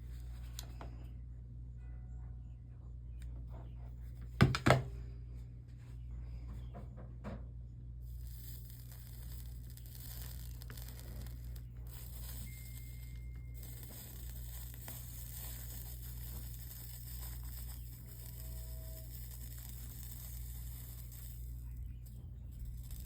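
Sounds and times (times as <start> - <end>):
steady electrical hum: 0.0 - 23.0
solder sizzling under iron: 8.0 - 23.0.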